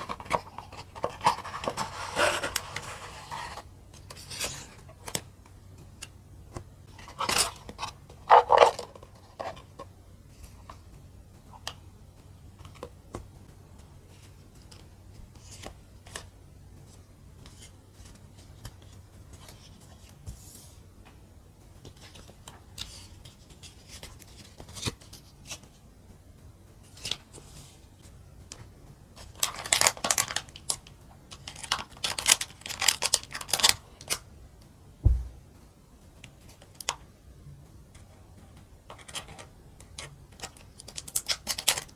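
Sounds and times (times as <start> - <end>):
packaging handling noise: 29.3 - 33.8
low thump: 35.0 - 35.6.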